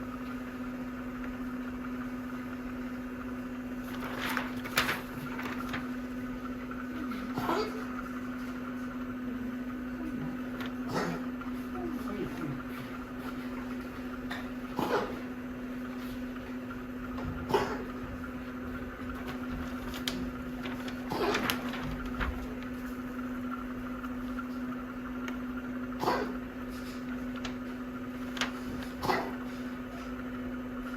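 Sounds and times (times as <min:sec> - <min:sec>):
steady low hum: 0:00.0 - 0:30.9
dog coughing: 0:07.2 - 0:08.0, 0:10.8 - 0:11.4, 0:14.7 - 0:15.3, 0:17.4 - 0:18.0, 0:26.0 - 0:26.4, 0:29.0 - 0:29.6.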